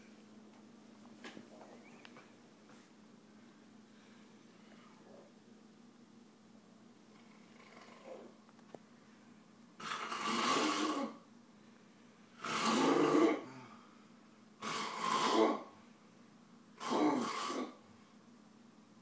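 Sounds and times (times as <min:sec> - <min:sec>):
heavy snoring: 0:07.2 - 0:08.4, 0:09.8 - 0:11.2, 0:12.4 - 0:13.7, 0:14.6 - 0:15.7, 0:16.8 - 0:17.8.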